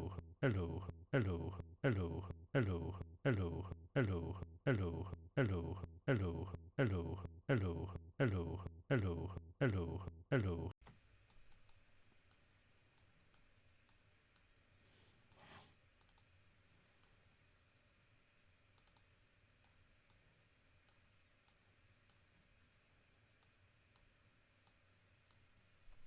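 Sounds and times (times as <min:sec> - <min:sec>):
computer mouse clicks: 0:10.8 - 0:12.4, 0:15.3 - 0:16.3, 0:18.8 - 0:20.2.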